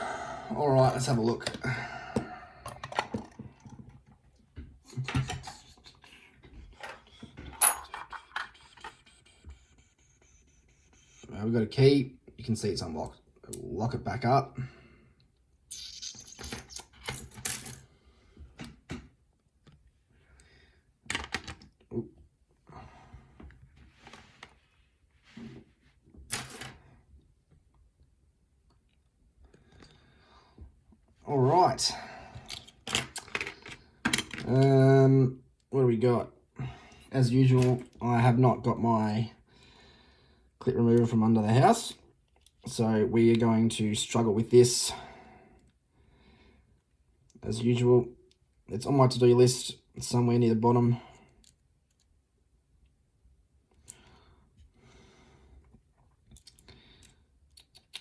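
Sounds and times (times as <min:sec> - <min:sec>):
lock and picks clicking and rattling: 0:02.6 - 0:04.2, 0:04.9 - 0:09.0, 0:15.7 - 0:17.9, 0:21.1 - 0:21.8, 0:32.4 - 0:34.7.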